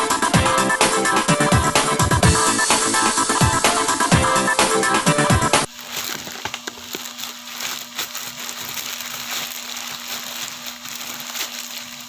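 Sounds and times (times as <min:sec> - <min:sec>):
packaging crinkling and rustling: 0:05.7 - 0:12.0.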